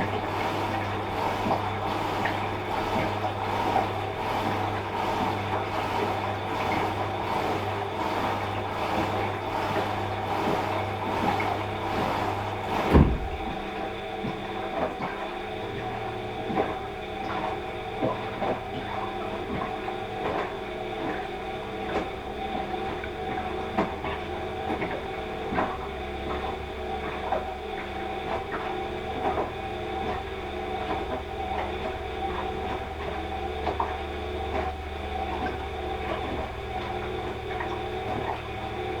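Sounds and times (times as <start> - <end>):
washing machine motor hum: 0.0 - 39.0
loud thump: 12.9 - 13.7.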